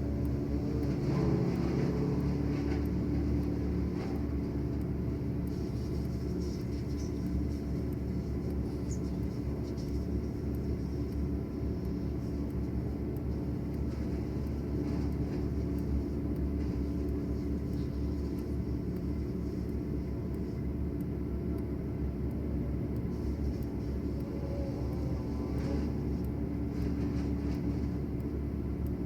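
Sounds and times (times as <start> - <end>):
machine engine humming: 0.0 - 29.0.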